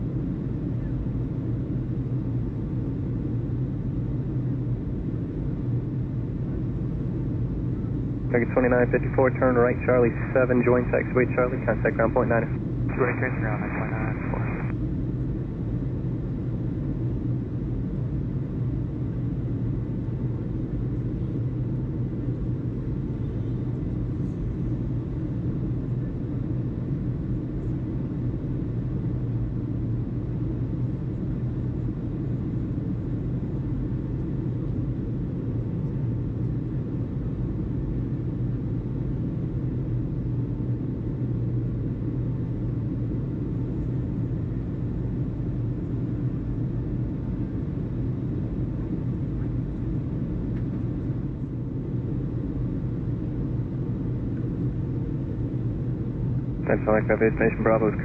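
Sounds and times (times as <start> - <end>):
low rumble: 8.3 - 14.7.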